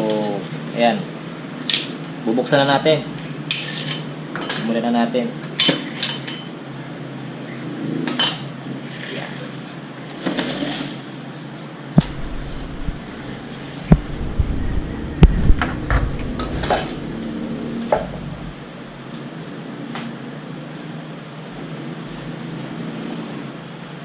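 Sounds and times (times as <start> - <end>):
steady hum: 11.9 - 19.2
dull thuds: 12.0 - 18.6.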